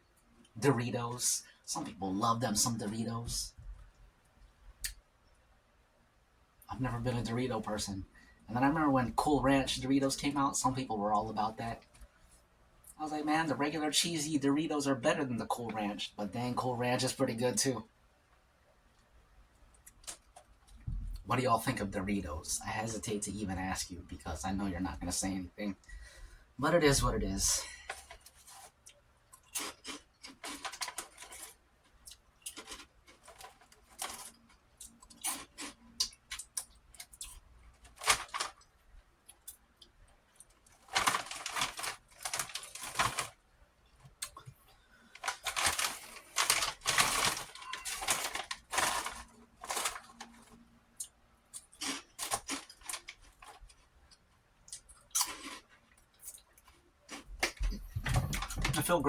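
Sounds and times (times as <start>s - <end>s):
crunching and chewing crackers: 26.9s - 59.0s.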